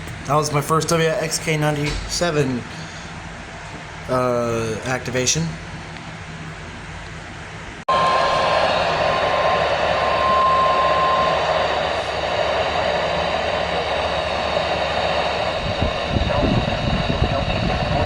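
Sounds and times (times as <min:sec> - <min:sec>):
radio static hiss: 0:07.9 - 0:18.0
radio warning alarm tone: 0:07.9 - 0:18.0.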